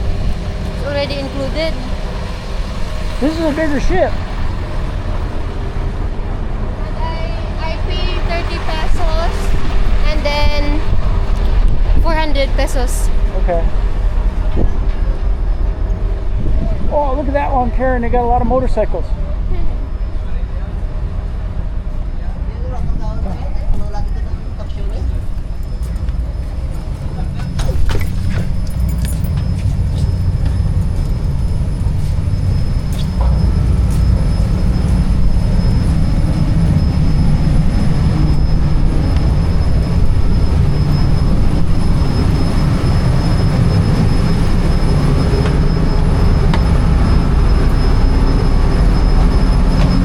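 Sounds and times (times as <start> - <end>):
ferry engines rumbling: 0.0 - 50.0.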